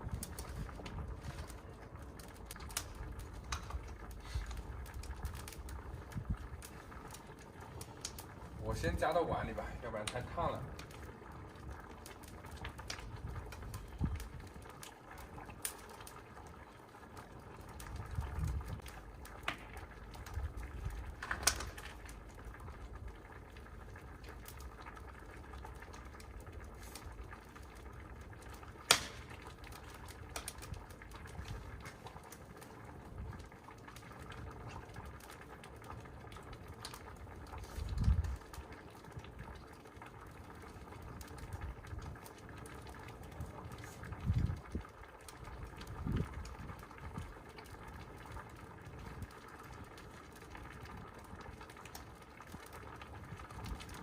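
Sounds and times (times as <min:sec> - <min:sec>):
wind buffeting microphone: 0:00.0 - 0:01.6, 0:04.5 - 0:06.8, 0:13.1 - 0:14.6, 0:17.8 - 0:18.9, 0:37.8 - 0:38.5, 0:44.1 - 0:47.3.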